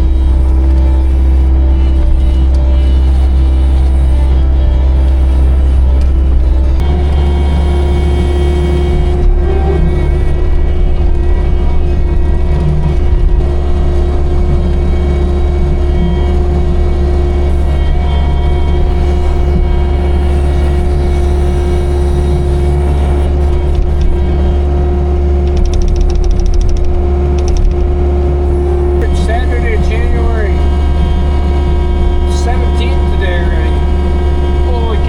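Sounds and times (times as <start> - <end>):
skid loader engine running: 0.0 - 35.0
rapid clicking: 25.4 - 28.0.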